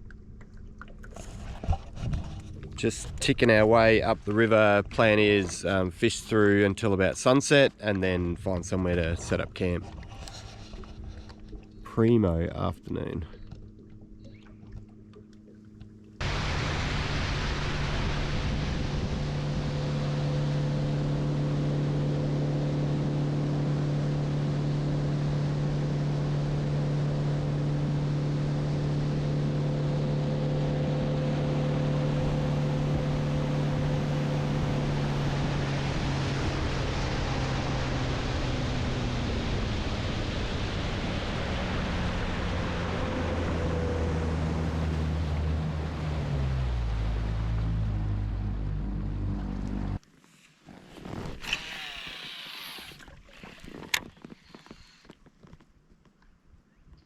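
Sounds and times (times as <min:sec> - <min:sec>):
rushing water: 0:00.0 - 0:55.0
boat motor humming: 0:00.0 - 0:55.6
wind: 0:00.0 - 0:57.0.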